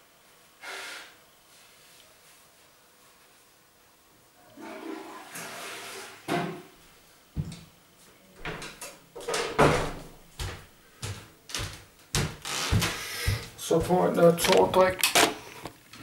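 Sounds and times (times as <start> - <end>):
door or cupboard knocks and bumps: 9.2 - 10.2.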